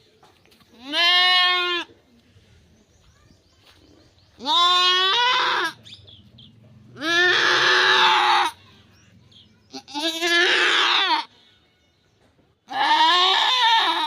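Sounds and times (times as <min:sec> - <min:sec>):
goat bleating loudly: 0:00.8 - 0:01.9, 0:04.4 - 0:05.8, 0:07.0 - 0:08.6, 0:09.7 - 0:11.3, 0:12.7 - 0:14.0.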